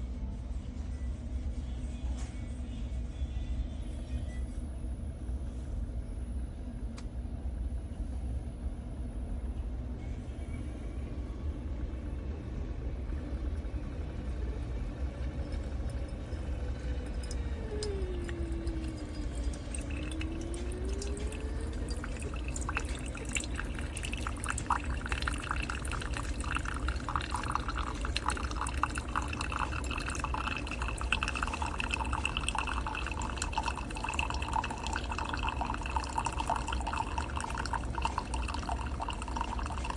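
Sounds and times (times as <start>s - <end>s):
coffee maker humming: 10.7s - 39.9s
coffee streaming and dripping: 11.7s - 39.9s.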